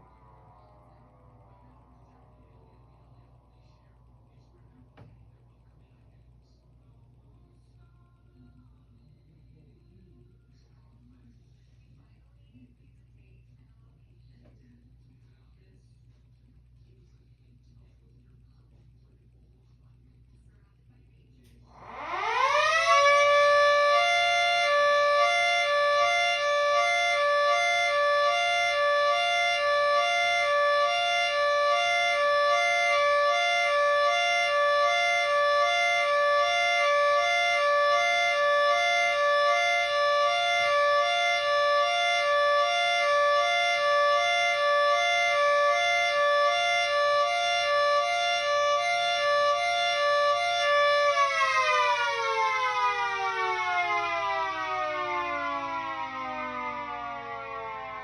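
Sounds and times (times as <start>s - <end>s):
dual-tone siren: 0.0s - 5.9s, 21.7s - 58.0s.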